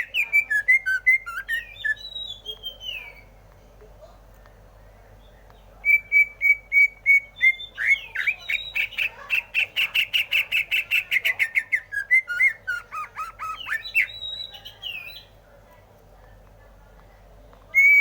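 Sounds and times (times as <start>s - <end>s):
bird singing whistled notes: 0.0s - 3.3s, 5.8s - 9.0s, 10.0s - 15.3s, 17.7s - 18.0s.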